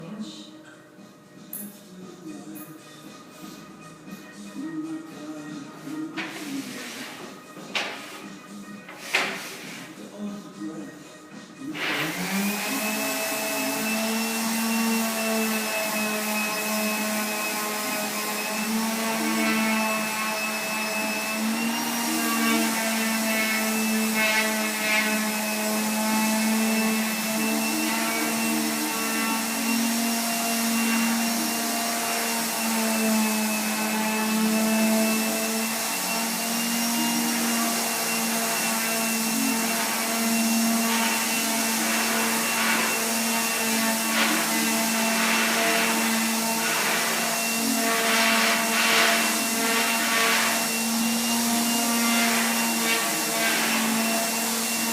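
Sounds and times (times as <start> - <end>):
power sander sanding wood: 11.8 - 54.9.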